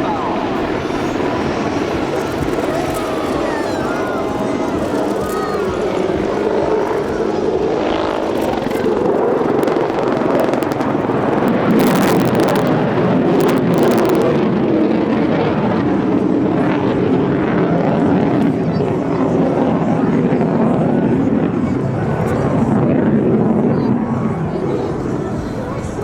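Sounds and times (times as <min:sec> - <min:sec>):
sharp crackles: 0:00.0 - 0:14.4
helicopter flying: 0:00.0 - 0:26.0.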